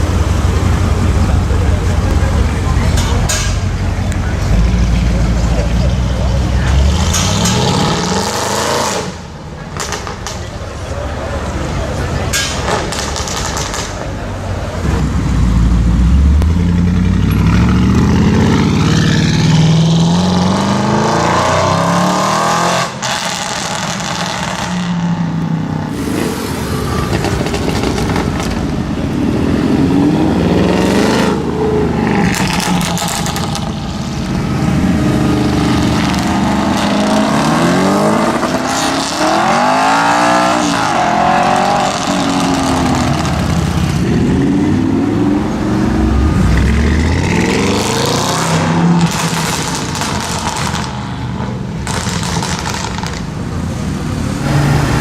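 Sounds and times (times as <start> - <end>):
car engine revving: 25.8 - 53.2
exhaust crackles and pops: 49.0 - 51.0, 51.8 - 53.4.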